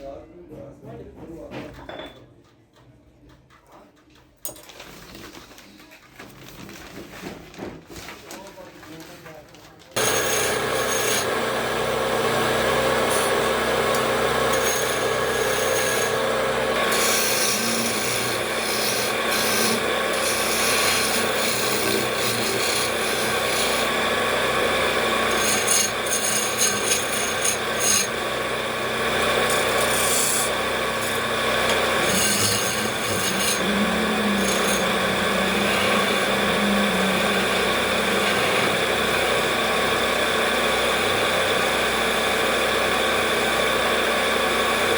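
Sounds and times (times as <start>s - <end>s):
turning tool scraping wood: 10.0s - 42.1s
lathe motor hum: 10.0s - 44.9s.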